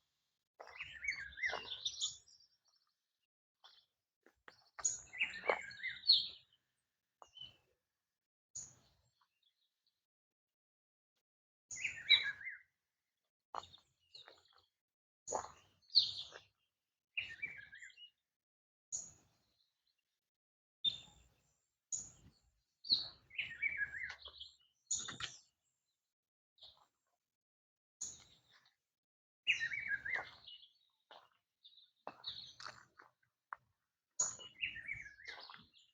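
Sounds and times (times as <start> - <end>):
songbirds chirping: 0.6 - 3.0, 3.6 - 7.7, 11.7 - 12.7, 13.5 - 14.7, 15.3 - 16.6, 17.2 - 18.2, 20.9 - 25.8, 28.0 - 28.8, 29.5 - 33.6, 34.2 - 35.9.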